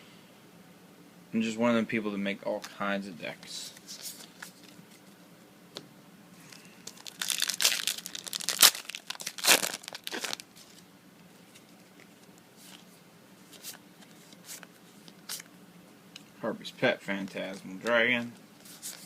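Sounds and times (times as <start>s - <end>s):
foil wrapper tearing and crinkling: 6.9s - 10.8s.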